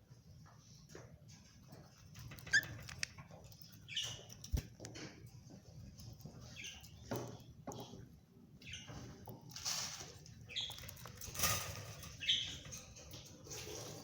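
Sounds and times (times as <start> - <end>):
birds chirping faintly: 0.3 - 13.7.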